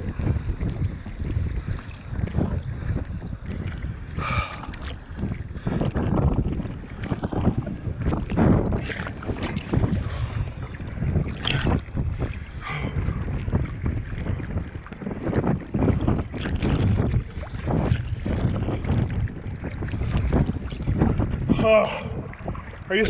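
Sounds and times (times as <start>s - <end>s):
strong gusting wind on microphone: 0.0s - 23.0s
water splashing against a kayak: 0.0s - 23.0s.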